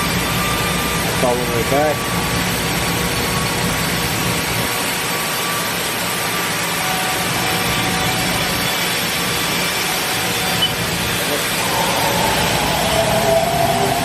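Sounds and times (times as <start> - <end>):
faint machine whines: 0.0 - 14.0
machine shop running noise: 0.0 - 14.0
low rumble: 11.5 - 14.0.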